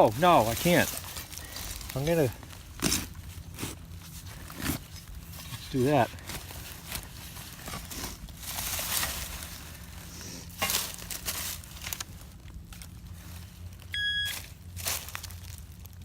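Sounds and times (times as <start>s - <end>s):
hand tool digging soil: 0.0s - 12.2s
short electronic beep: 13.9s - 14.4s.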